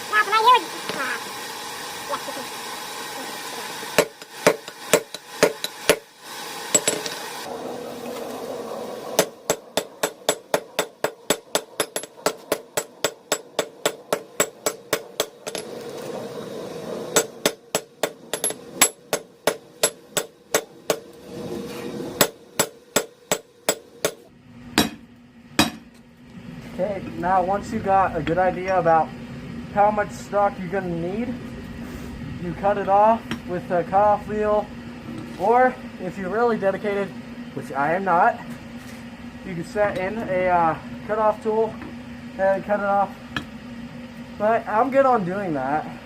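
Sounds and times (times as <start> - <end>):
hammer striking steel on anvil: 4.0 - 6.1, 6.7 - 7.2, 9.2 - 15.7, 17.2 - 21.1, 22.2 - 26.0.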